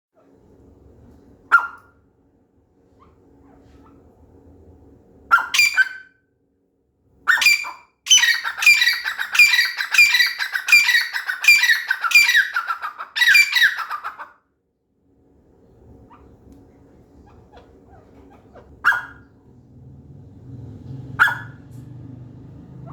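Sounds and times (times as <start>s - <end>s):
francolin ringing calls: 7.3s - 14.1s.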